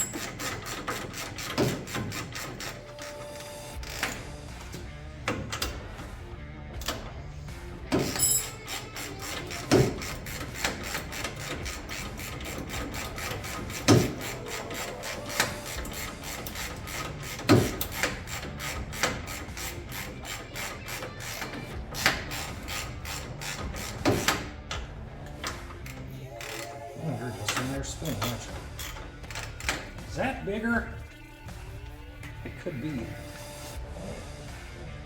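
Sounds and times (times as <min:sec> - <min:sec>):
socket ratchet clicking: 0:27.6 - 0:30.0.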